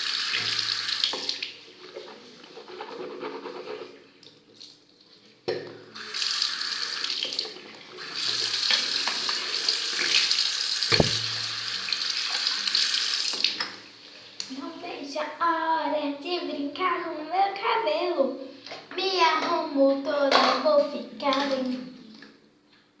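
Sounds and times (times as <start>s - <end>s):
tap water running into sink: 5.5s - 13.8s
knock: 10.9s - 11.4s.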